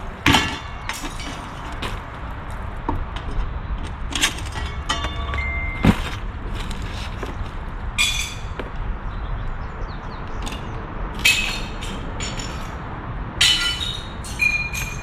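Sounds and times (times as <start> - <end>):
glass smashing: 4.5 - 6.1
glass clinks: 4.6 - 6.0, 13.4 - 15.0.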